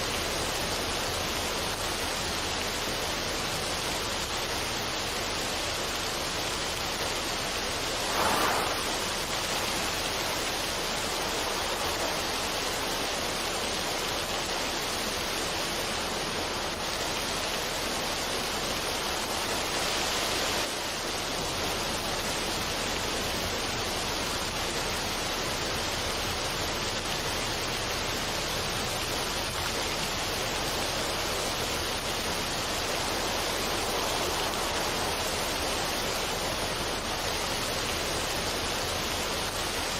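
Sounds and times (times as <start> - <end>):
water rushing over rocks: 0.0 - 39.9
water splash: 7.7 - 13.7.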